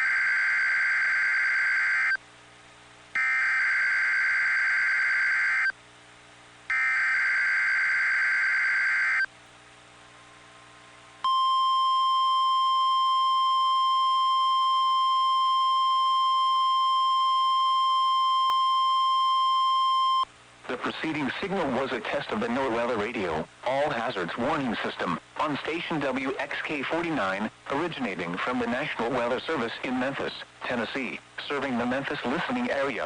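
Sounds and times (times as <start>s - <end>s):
steady warning alarm tone: 0.0s - 2.2s, 3.2s - 5.7s, 6.7s - 9.3s.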